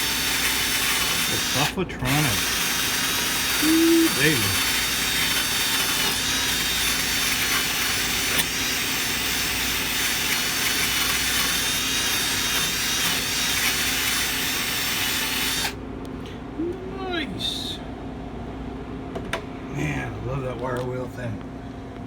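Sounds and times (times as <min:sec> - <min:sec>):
drill wire wheel scrubbing metal: 0:00.0 - 0:15.8.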